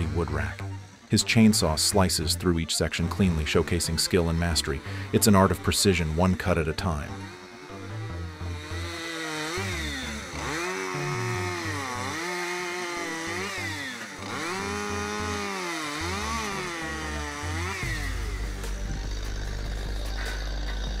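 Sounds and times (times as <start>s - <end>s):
low engine drone: 0.0s - 12.0s, 16.3s - 21.0s
chainsaw cutting logs: 0.0s - 21.0s.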